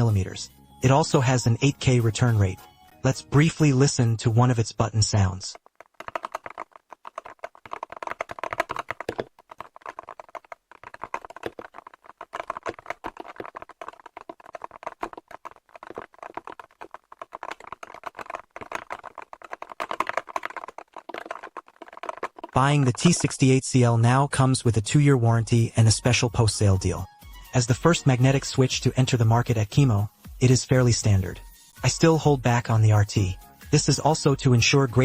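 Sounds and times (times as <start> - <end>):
keyboard keystroke clacks: 5.8 - 23.2.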